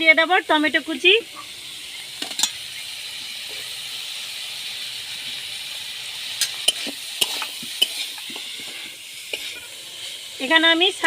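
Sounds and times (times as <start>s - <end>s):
vegetables sizzling in oil: 0.0s - 11.0s
metal spatula scraping pan: 6.4s - 10.1s.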